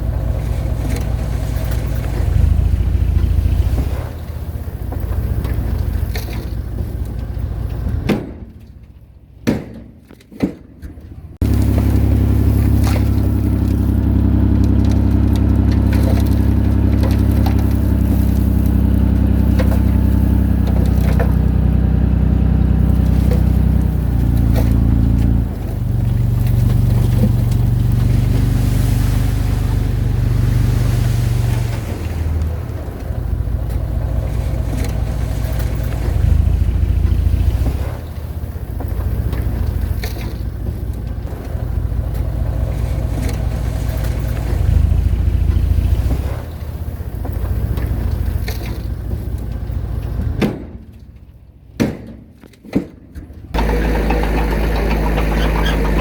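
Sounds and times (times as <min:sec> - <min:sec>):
bulldozer diesel engine: 0:00.0 - 0:09.4, 0:11.1 - 0:50.4, 0:53.3 - 0:56.0
knocks: 0:09.4 - 0:11.0.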